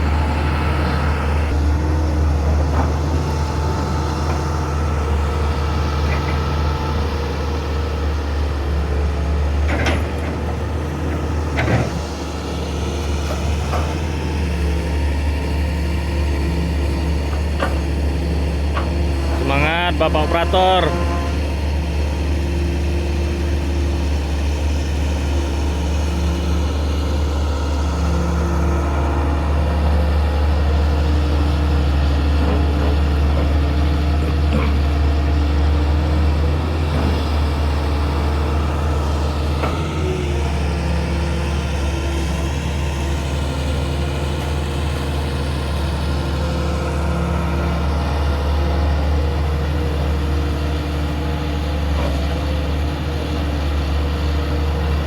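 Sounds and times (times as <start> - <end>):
hydraulic whine: 0.0 - 30.7
excavator diesel engine running: 0.0 - 55.0.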